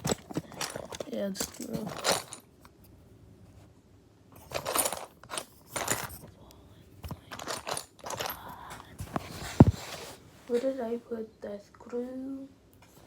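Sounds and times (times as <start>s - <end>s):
small metal parts clinking: 0.0s - 2.5s, 4.4s - 6.3s, 7.1s - 8.9s.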